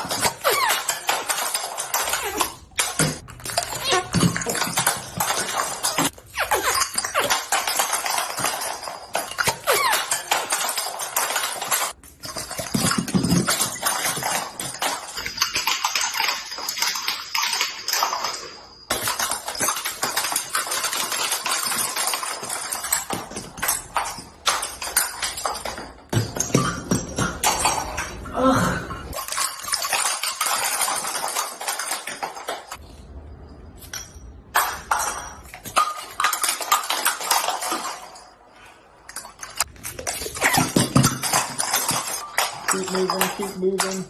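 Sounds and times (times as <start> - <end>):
joints cracking and popping: 0.0 - 28.3, 29.0 - 44.0.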